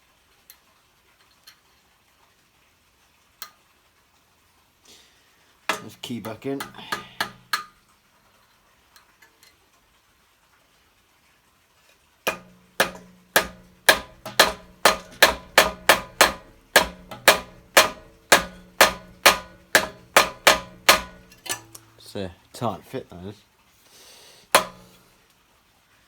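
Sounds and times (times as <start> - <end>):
hammer tapping on metal: 5.7 - 7.8, 12.3 - 21.8, 24.6 - 25.0.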